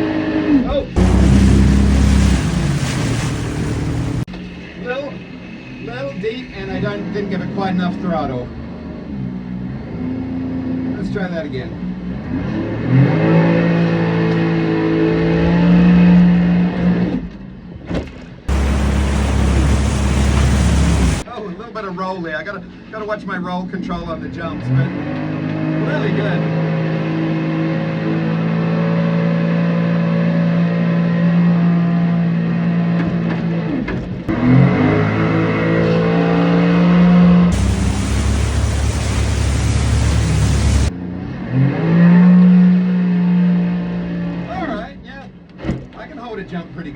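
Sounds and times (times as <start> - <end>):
loud rushing noise with rumble: 1.0 - 4.3, 18.5 - 21.3, 37.5 - 41.0
watercraft engine at high throttle: 1.0 - 4.3, 18.5 - 21.2, 37.5 - 40.9.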